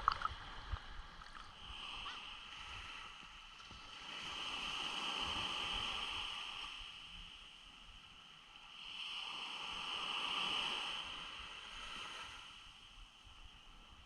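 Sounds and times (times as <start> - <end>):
muffled water sloshing: 0.0 - 2.2.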